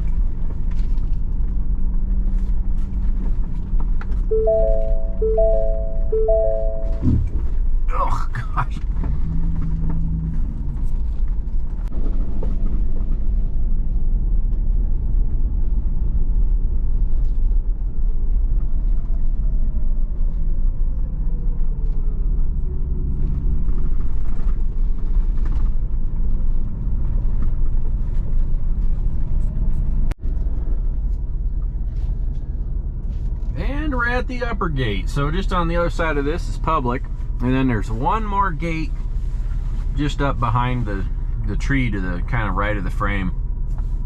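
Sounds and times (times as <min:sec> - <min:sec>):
off-road vehicle engine rumble: 0:00.0 - 0:44.0.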